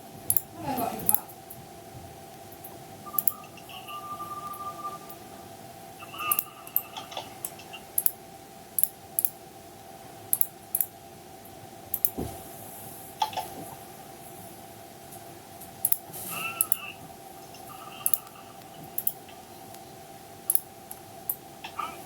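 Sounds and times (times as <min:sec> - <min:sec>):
steady hum: 0:00.0 - 0:22.0
sharp clicks: 0:00.2 - 0:00.5, 0:02.3 - 0:03.4, 0:06.3 - 0:08.2, 0:08.8 - 0:09.4, 0:10.3 - 0:11.0, 0:11.9 - 0:12.2, 0:15.8 - 0:16.8, 0:17.4 - 0:19.9, 0:20.5 - 0:21.4
high beeping tones: 0:03.0 - 0:07.1.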